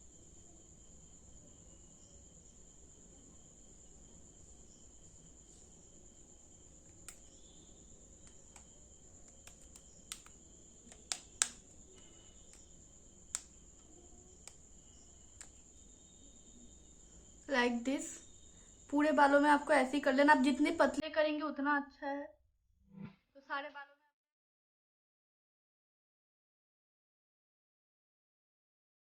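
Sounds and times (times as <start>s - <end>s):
crickets trilling: 0.0s - 21.4s
sharp clicks and taps: 6.8s - 7.3s, 8.2s - 12.7s, 13.3s - 14.6s, 15.4s - 15.6s.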